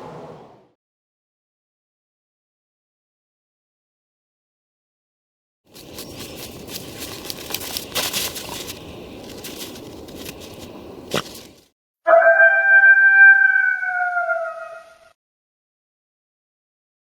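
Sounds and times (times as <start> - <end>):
crackling and crunching: 5.7 - 11.7
wolf howling: 12.1 - 15.1.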